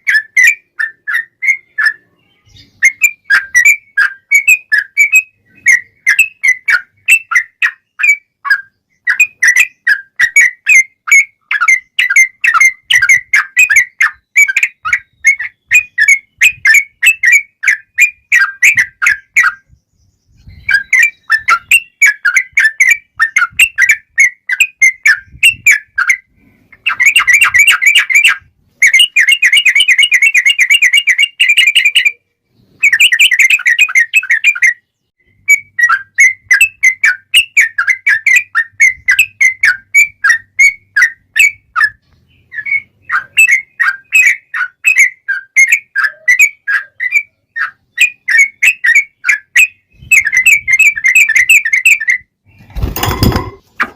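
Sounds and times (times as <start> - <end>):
bird chattering song: 0.0 - 53.9
bird rolling trills: 52.5 - 53.9.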